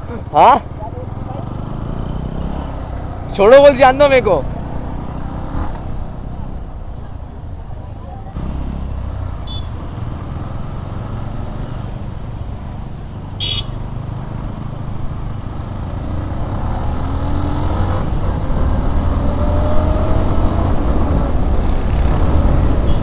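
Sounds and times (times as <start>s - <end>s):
motorcycle engine: 0.0s - 23.0s
motorcycle horn beep: 9.4s - 9.8s, 13.4s - 13.8s, 22.8s - 23.0s.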